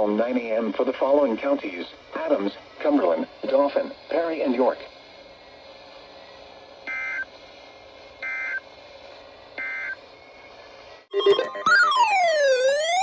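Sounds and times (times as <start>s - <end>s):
faint radio hiss: 0.0s - 13.0s
digital data tone bursts: 11.1s - 13.0s
electronic alert tone sweeping: 11.1s - 13.0s.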